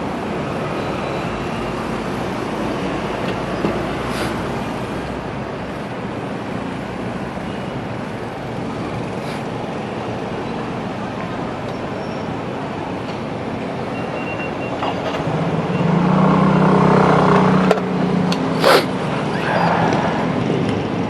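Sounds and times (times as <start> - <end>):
brief hisses: 4.1 - 4.4, 9.2 - 9.4, 18.6 - 18.9.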